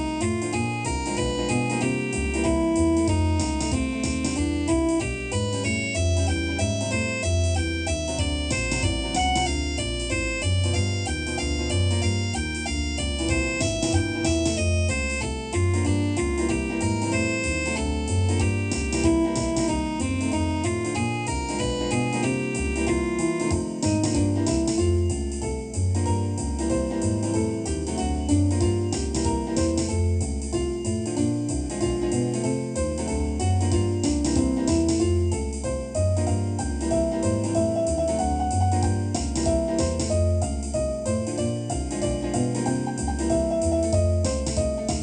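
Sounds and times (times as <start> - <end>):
jazz band with piano: 0.0 - 45.0.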